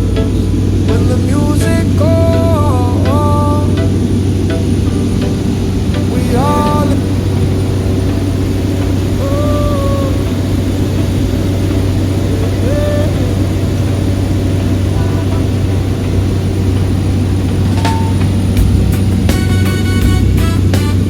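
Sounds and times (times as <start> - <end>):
person singing: 0.0 - 7.6, 9.1 - 11.1, 12.3 - 14.1, 14.8 - 15.9
turboprop cabin drone: 0.0 - 21.0.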